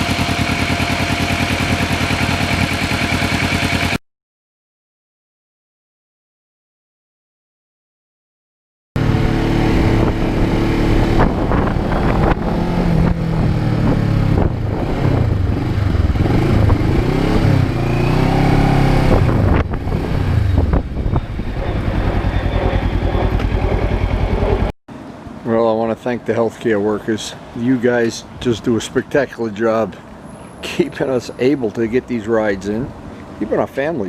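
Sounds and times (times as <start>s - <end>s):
motorcycle engine revving: 0.0s - 4.0s, 9.0s - 24.7s.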